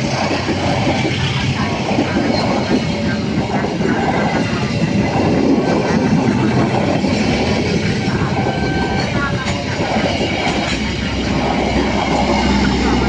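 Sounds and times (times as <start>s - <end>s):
train wheels rumbling on rails: 0.0s - 13.0s.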